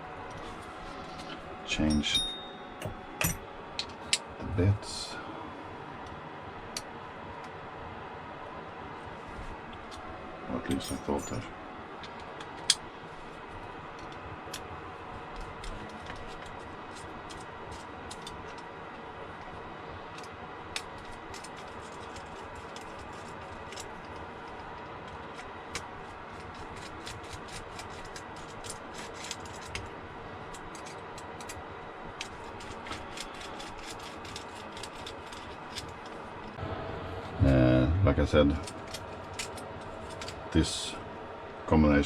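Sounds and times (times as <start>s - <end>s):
steady background hum: 0.0s - 42.0s.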